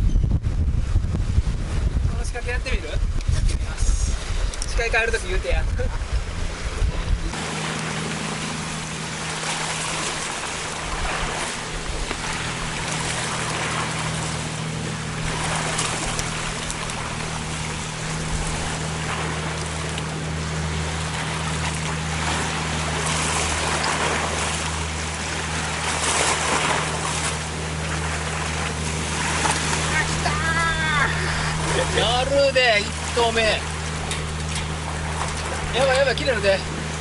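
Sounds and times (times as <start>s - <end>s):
wind on microphone: 0.0s - 7.6s
steady low hum: 0.0s - 37.0s
waves on a rocky shore: 2.0s - 37.0s.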